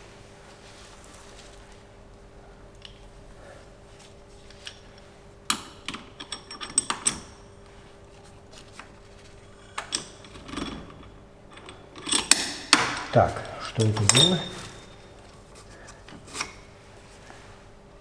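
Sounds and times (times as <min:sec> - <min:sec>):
metal tools clanking on engine: 0:04.5 - 0:07.6, 0:09.3 - 0:16.7.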